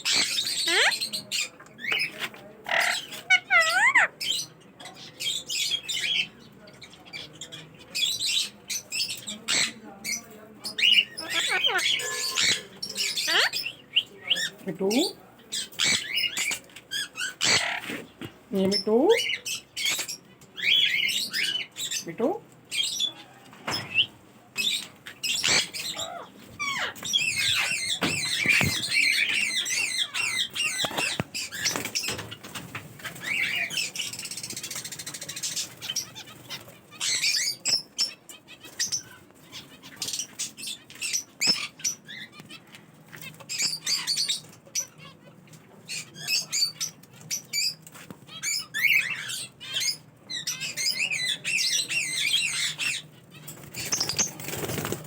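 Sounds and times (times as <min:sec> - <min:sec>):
parrots chirping and squawking: 0:00.0 - 0:06.4, 0:07.1 - 0:55.0
wings fluttering: 0:26.8 - 0:29.6, 0:53.5 - 0:55.0.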